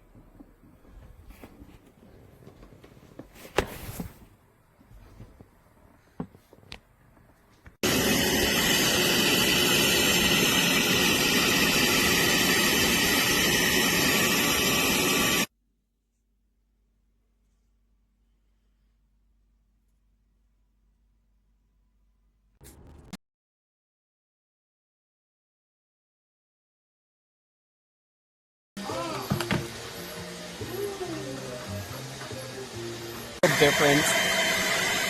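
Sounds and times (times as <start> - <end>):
carpet cleaner motor running: 7.8 - 15.5, 33.4 - 35.0.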